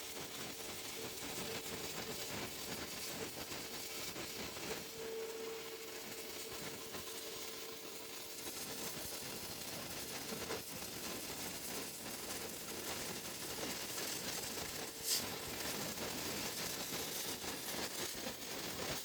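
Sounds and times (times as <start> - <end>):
plasma cutter hissing: 14.7 - 15.9.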